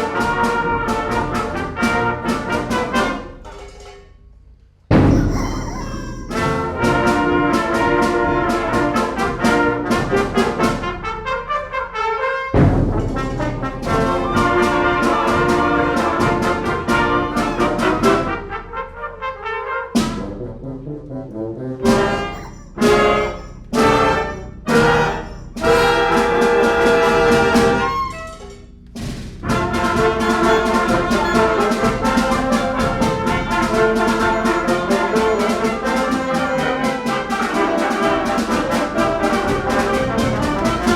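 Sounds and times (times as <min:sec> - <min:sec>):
concert band playing a galop: 0:00.0 - 0:03.2, 0:04.9 - 0:10.9, 0:13.4 - 0:18.5, 0:21.8 - 0:28.4, 0:29.4 - 0:40.9
trumpets and trombones: 0:00.0 - 0:04.0, 0:04.9 - 0:40.9.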